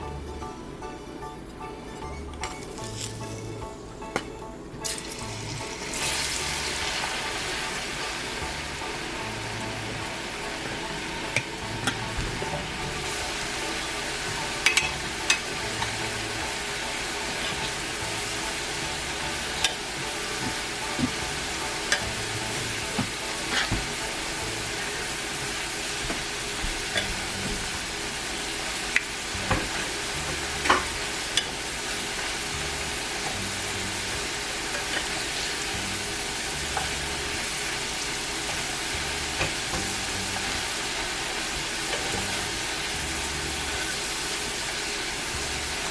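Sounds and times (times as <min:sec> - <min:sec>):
fries sizzling in hot oil: 0:02.5 - 0:03.6, 0:04.8 - 0:45.9.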